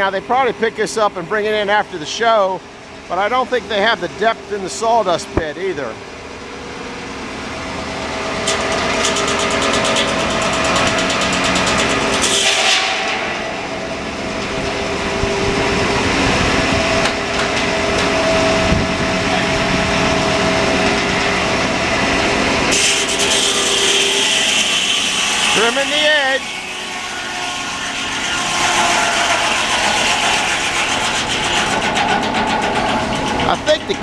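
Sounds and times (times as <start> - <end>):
engine working under load: 0.0 - 34.0
saw blade cutting through log: 22.7 - 34.0.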